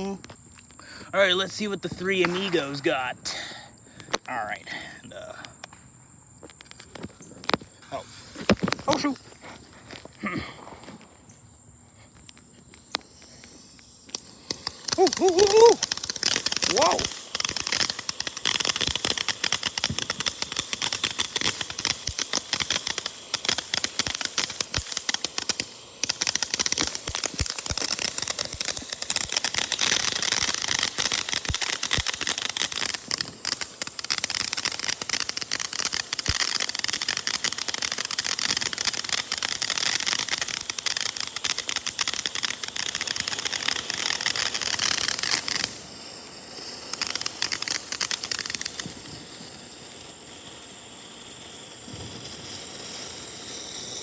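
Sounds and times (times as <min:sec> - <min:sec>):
firework crackling: 0:00.0 - 0:54.0
firework pops: 0:01.8 - 0:03.1, 0:03.9 - 0:04.4, 0:05.4 - 0:11.2, 0:12.1 - 0:54.0.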